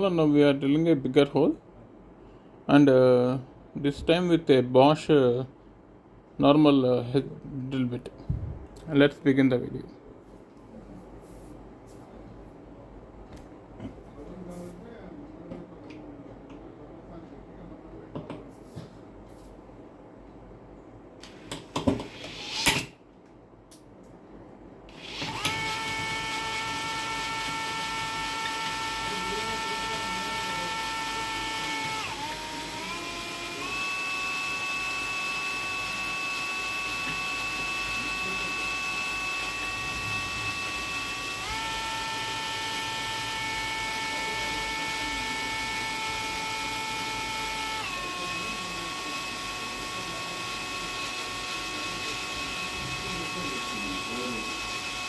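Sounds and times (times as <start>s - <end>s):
electric drill whining: 21.2s - 22.9s, 24.9s - 55.0s.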